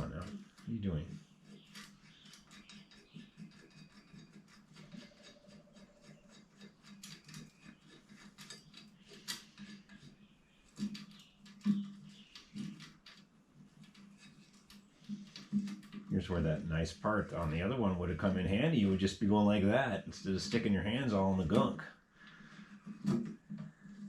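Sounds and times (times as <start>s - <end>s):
small metal parts clicking: 1.4s - 16.0s.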